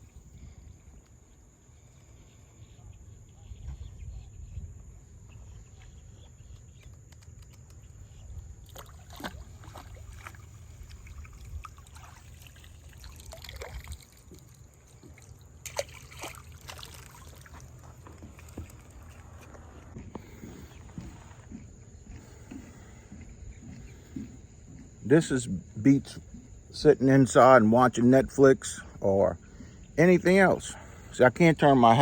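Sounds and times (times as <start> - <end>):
wind rumble on microphone: 2.6 - 6.8, 9.4 - 12.0
water sloshing and trickling: 8.5 - 27.6.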